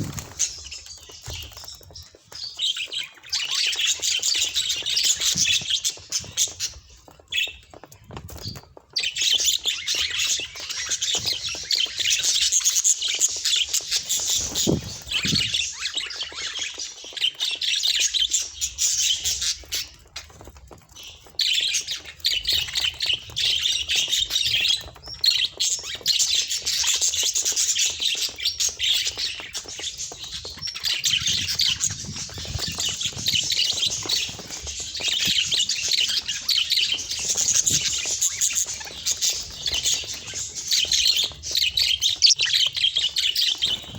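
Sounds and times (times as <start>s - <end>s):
budgerigars chattering: 14.0s - 16.6s.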